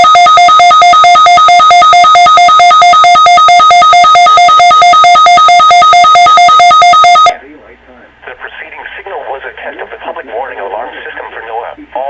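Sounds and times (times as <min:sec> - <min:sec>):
electronic alarm beeping rapidly: 0:00.0 - 0:07.4.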